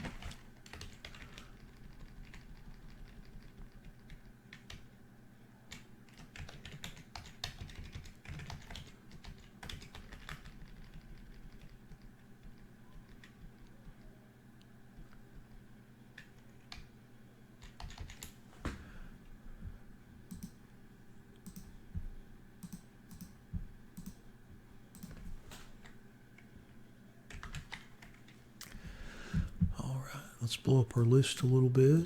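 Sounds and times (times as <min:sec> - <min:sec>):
typing on computer keyboard: 0:00.0 - 0:04.9, 0:05.7 - 0:14.1, 0:16.2 - 0:16.9, 0:17.6 - 0:18.3, 0:20.3 - 0:20.6, 0:21.4 - 0:21.8, 0:22.6 - 0:23.4, 0:24.0 - 0:24.2, 0:24.9 - 0:25.4, 0:27.3 - 0:28.4
faint low hum: 0:00.0 - 0:32.0.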